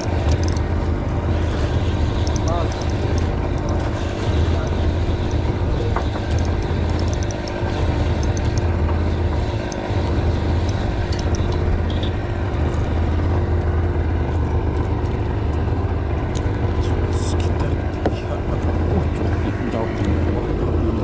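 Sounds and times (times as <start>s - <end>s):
faint scattered ticks: 0.0s - 0.6s, 2.2s - 8.8s, 10.6s - 12.1s
engine humming steadily: 0.0s - 21.0s.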